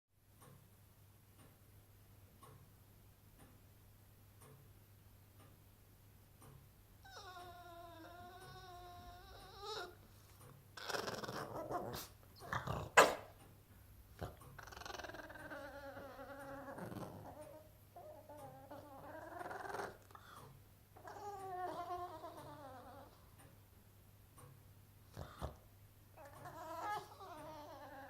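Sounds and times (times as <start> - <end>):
dog moaning and whining: 7.0 - 13.4, 14.2 - 20.3, 21.0 - 23.3, 25.1 - 28.0.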